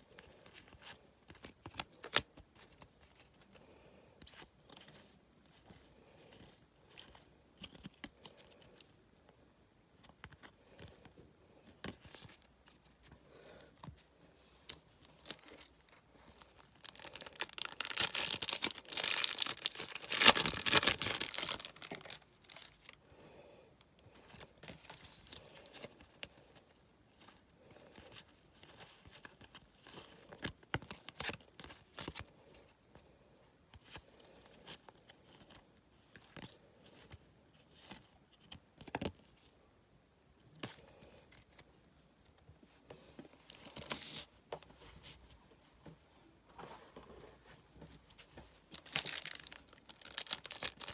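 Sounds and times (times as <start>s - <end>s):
wrapper tearing and crinkling: 16.6s - 23.0s, 48.7s - 50.9s
soft crinkles and clicks: 48.1s - 50.9s.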